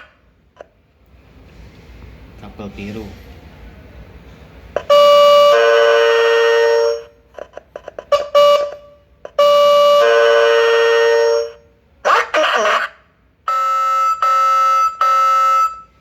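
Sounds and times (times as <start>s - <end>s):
two-note electronic reversing horn: 4.8s - 7.2s, 8.1s - 11.6s.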